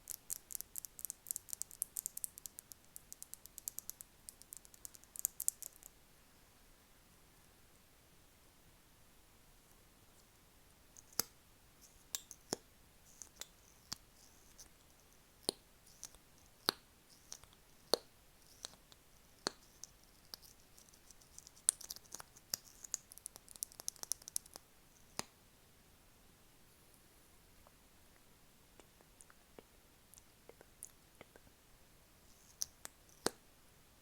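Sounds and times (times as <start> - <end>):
sharp close-up clicks: 0.0 - 5.9.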